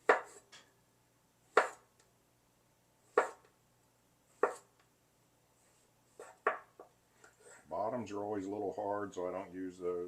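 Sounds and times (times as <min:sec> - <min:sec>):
knife cutting on board: 0:00.0 - 0:00.5, 0:01.5 - 0:01.9, 0:03.1 - 0:03.5, 0:04.3 - 0:04.7, 0:06.1 - 0:07.6.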